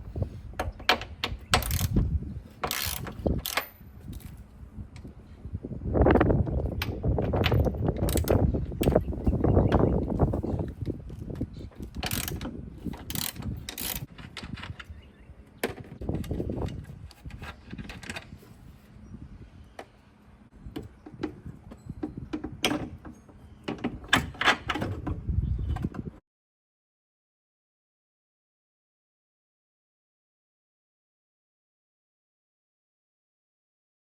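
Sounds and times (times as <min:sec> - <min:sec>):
hand ratchet clicking: 0:02.6 - 0:03.7, 0:11.8 - 0:14.1
metal tools clanking: 0:02.6 - 0:04.4, 0:11.6 - 0:15.0.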